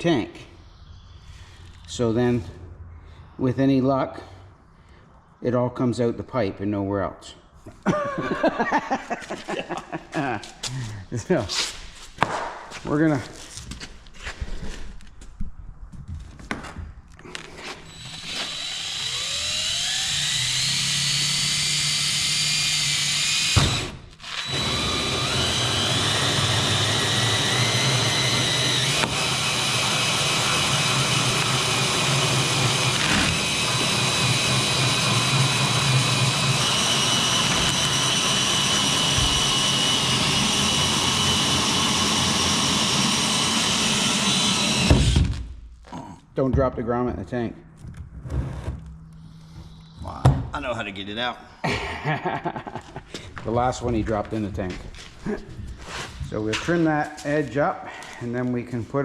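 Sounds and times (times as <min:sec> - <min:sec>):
power drill whining: 0:17.3 - 0:45.4.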